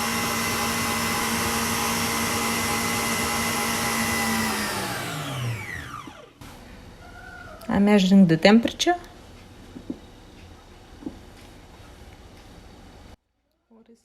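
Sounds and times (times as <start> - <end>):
electric mixer running: 0.0 - 6.5.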